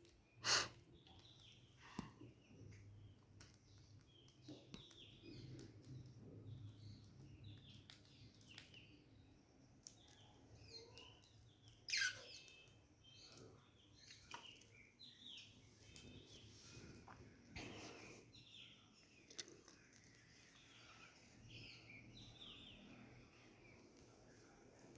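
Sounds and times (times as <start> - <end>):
budgerigars chirping: 11.9 - 12.6.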